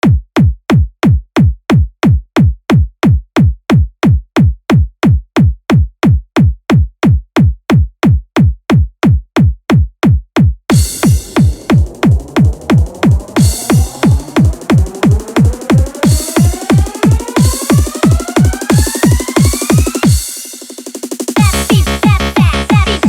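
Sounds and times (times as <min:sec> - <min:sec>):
drum machine kick drum: 0:00.0 - 0:23.0
rising synth sweep: 0:10.7 - 0:22.4
cymbal crash: 0:10.7 - 0:22.7.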